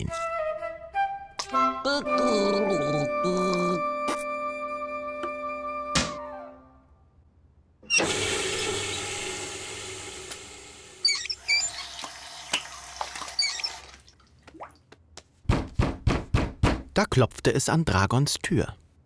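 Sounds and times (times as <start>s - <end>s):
short squeaks: 11.0s - 12.0s, 13.2s - 13.9s.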